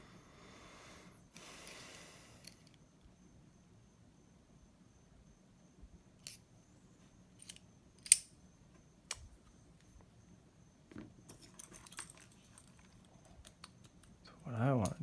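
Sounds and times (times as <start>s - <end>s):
metallic clicks of lock parts: 6.2s - 6.4s, 7.4s - 8.4s, 11.3s - 14.2s, 14.8s - 15.0s
lock parts rattling: 7.4s - 8.3s, 11.3s - 15.0s.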